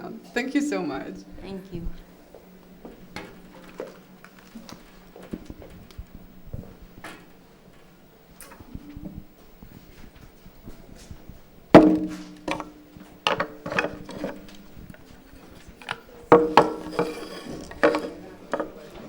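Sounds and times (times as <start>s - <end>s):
objects knocking and clattering: 11.8s - 19.0s.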